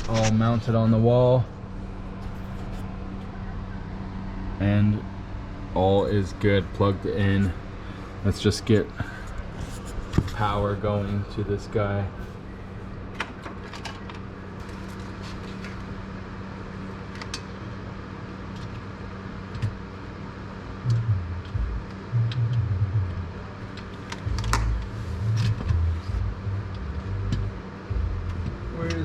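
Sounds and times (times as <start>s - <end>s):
computer fans humming: 0.0s - 29.0s
cables and hardware rattling: 8.2s - 12.3s, 13.1s - 15.9s, 23.7s - 26.2s.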